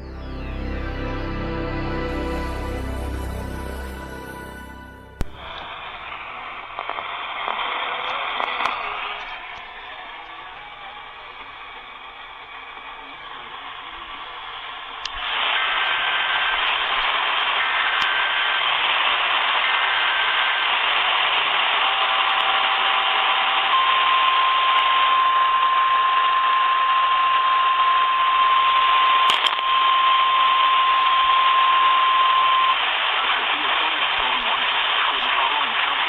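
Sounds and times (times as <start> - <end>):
long steady alert tone: 0.0 - 6.5
radio static hiss: 5.2 - 10.3, 11.3 - 21.8, 32.8 - 36.0.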